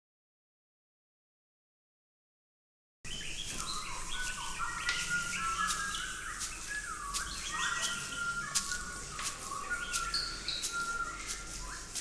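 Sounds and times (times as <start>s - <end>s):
bird-like chirps and whistles: 3.1s - 12.0s.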